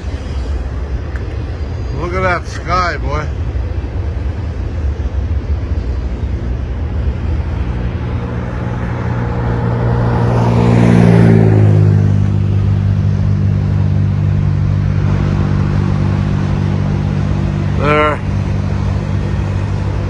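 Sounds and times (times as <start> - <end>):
low engine hum: 0.0 - 20.0
vehicle passing by: 6.6 - 20.0.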